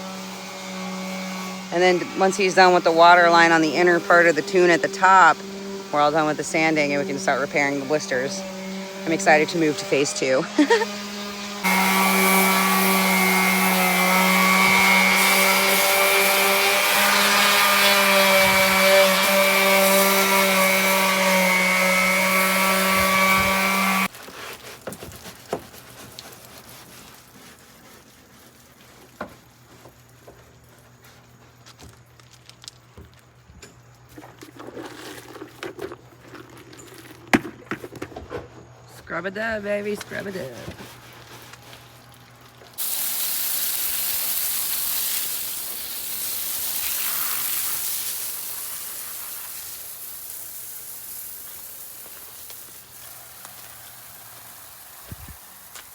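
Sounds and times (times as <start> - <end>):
electric sander humming: 0.0 - 24.1.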